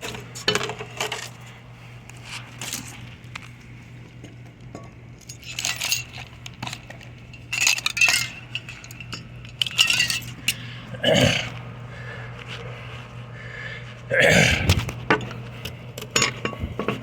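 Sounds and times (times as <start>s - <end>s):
steady low hum: 0.0s - 17.0s
metal clinking and rattling: 4.2s - 10.7s.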